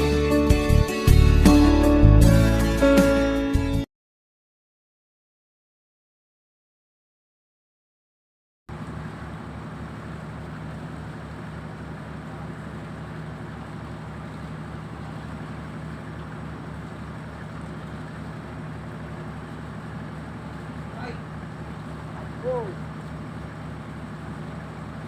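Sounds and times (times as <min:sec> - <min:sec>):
boat engine humming: 0:00.0 - 0:03.4, 0:08.7 - 0:25.0.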